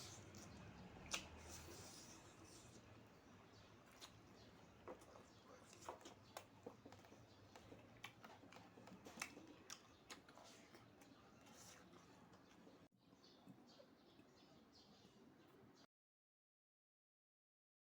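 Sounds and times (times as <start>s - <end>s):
person chewing food: 3.8s - 12.9s.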